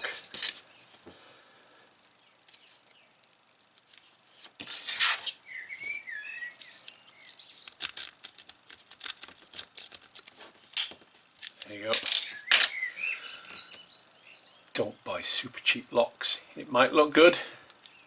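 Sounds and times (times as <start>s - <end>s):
metallic lock clicks and rattles: 6.6s - 12.7s.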